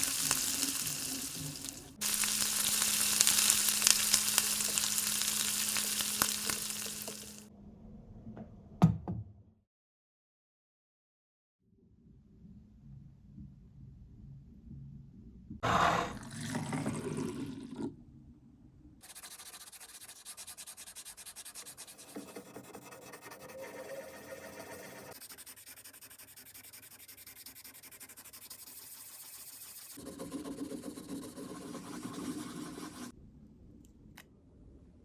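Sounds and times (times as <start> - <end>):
scratchy rubbing on model car: 15.6 - 16.2, 19.0 - 33.1.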